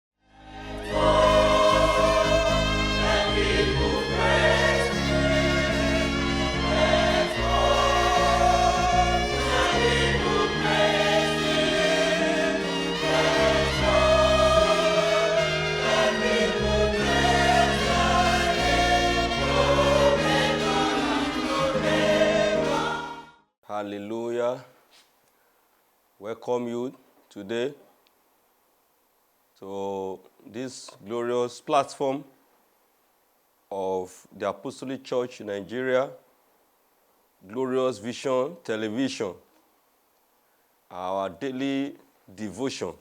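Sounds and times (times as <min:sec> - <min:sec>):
choir singing gospel song: 0:00.3 - 0:23.4
sustained chords: 0:00.4 - 0:23.3
stepping bass notes: 0:00.9 - 0:22.9.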